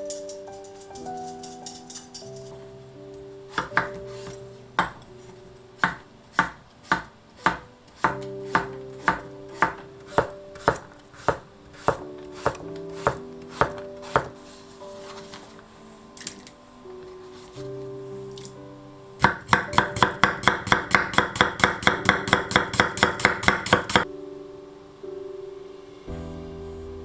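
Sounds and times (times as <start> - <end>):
knife chopping on cutting board: 3.6 - 4.0, 5.8 - 14.4, 19.2 - 24.0.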